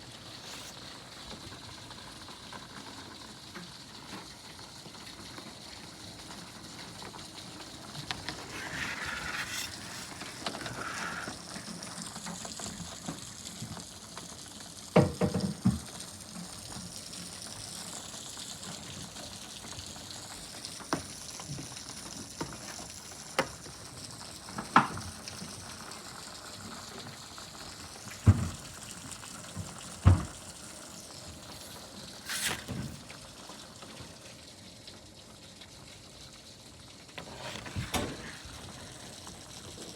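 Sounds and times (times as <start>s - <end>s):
rain falling with steady hiss: 0.0s - 39.9s
drops knocking on hard surface: 15.0s - 15.8s.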